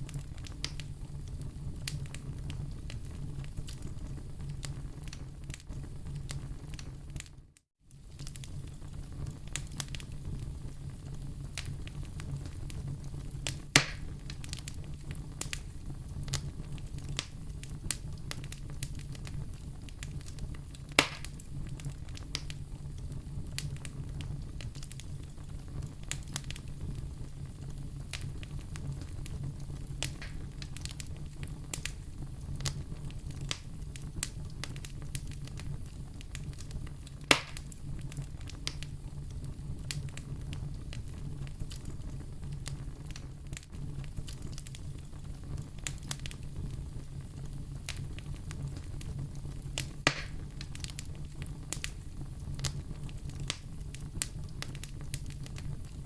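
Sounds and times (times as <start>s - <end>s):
loud fire pops: 0.0s - 7.3s, 8.0s - 56.0s
low fire rumble: 0.0s - 56.0s
wood fire crackling: 0.0s - 56.0s.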